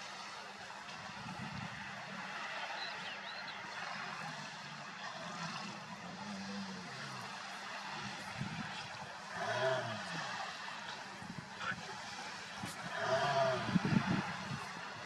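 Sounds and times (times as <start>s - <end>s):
steady rushing background noise: 0.0s - 15.0s
walruses snoring and grunting: 4.2s - 11.8s, 12.6s - 14.1s.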